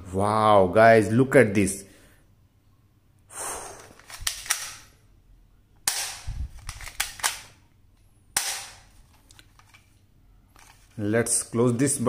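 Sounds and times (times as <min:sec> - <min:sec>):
toy gun bangs: 0:05.9 - 0:07.5, 0:08.4 - 0:08.9.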